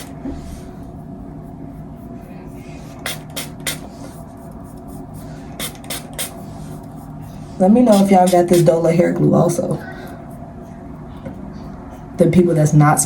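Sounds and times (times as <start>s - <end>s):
low room hum: 0.0s - 13.0s.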